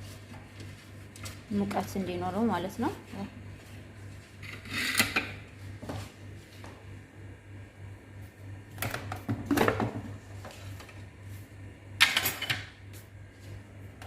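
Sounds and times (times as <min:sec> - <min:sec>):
steady low hum: 0:00.0 - 0:14.0
utensils and cookware clattering: 0:12.0 - 0:12.7.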